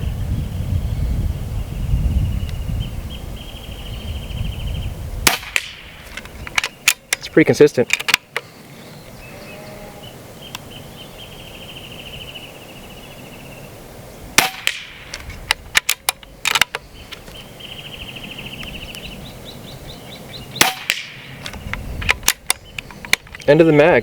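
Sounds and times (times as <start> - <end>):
air pistol cracks: 5.3 - 7.2, 14.4 - 16.8, 20.6 - 23.3.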